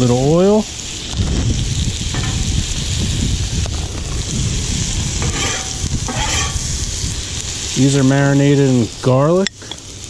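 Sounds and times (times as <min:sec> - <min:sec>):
food sizzling on a griddle: 0:00.0 - 0:10.0
wind rumbling on microphone: 0:00.9 - 0:08.3
scraping on griddle: 0:01.7 - 0:08.2.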